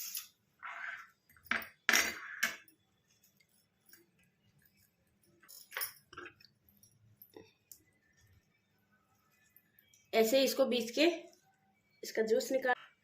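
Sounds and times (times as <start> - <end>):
soft clinks: 4.7 - 7.9.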